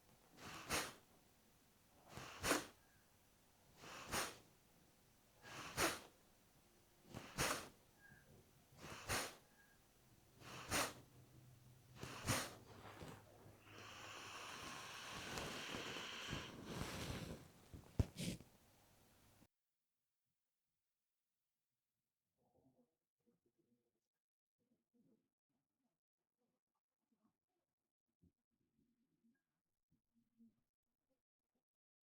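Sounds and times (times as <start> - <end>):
long breath through nose: 0.4 - 1.0, 2.1 - 2.8, 3.8 - 4.4, 5.4 - 6.1, 7.1 - 7.8, 8.8 - 9.4, 10.4 - 11.1, 12.0 - 18.4
forceful nasal exhalations: 0.4 - 1.1, 2.0 - 2.8, 3.8 - 4.5, 5.4 - 6.2, 7.1 - 7.8, 8.8 - 9.6, 10.3 - 18.5.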